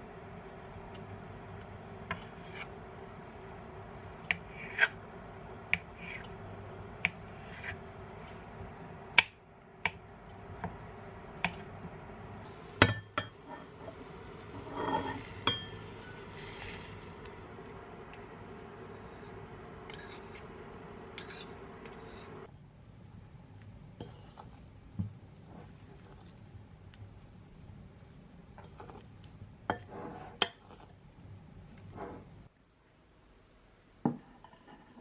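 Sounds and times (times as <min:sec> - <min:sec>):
faint steady hum: 0:00.0 - 0:35.0
scraping rustle: 0:13.6 - 0:17.5
dishes and cutlery clinking: 0:14.6 - 0:15.8.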